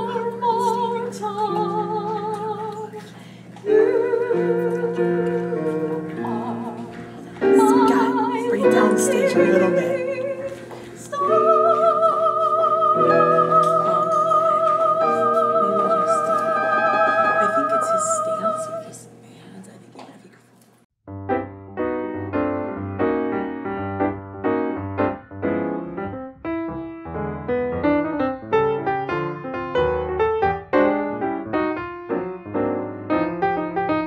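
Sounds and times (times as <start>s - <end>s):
classical voice singing with vibrato: 0.0s - 3.0s, 3.6s - 19.1s
instrumental accompaniment: 0.0s - 18.9s, 21.1s - 34.0s.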